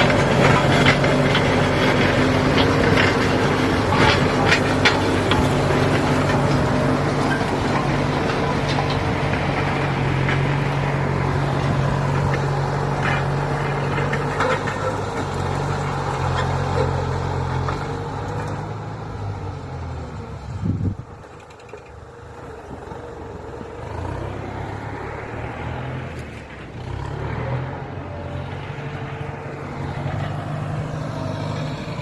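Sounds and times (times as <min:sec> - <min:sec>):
rattles and knocks from tillage gear: 0:00.0 - 0:24.8
tractor diesel engine running: 0:00.0 - 0:32.0.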